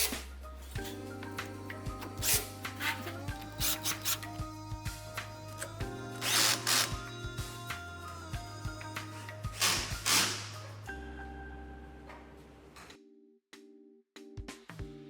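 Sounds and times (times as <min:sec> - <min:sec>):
background music: 0:00.0 - 0:15.0
power drill driving screws: 0:06.2 - 0:07.0, 0:09.6 - 0:10.6.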